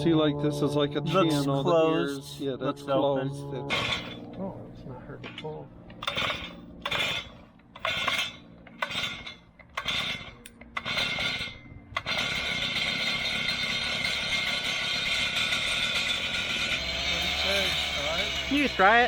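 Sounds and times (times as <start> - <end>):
two-stroke engine running: 3.6 - 19.0
recoil pull cord pulls: 5.9 - 18.8.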